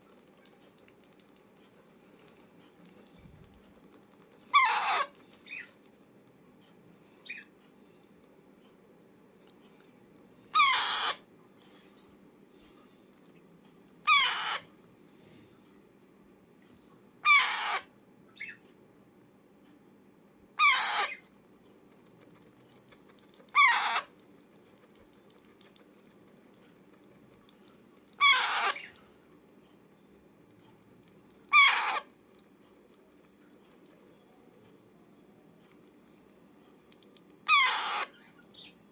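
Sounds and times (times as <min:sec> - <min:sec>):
parakeet screeching: 0:04.5 - 0:05.7, 0:10.5 - 0:11.2, 0:14.0 - 0:14.7, 0:17.2 - 0:18.6, 0:20.6 - 0:21.2, 0:23.5 - 0:24.1, 0:28.2 - 0:29.0, 0:31.5 - 0:32.1, 0:37.4 - 0:38.7.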